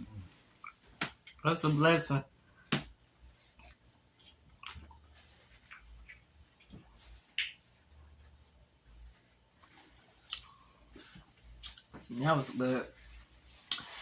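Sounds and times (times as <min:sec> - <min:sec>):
person chewing food: 0:03.5 - 0:07.6, 0:11.5 - 0:11.9.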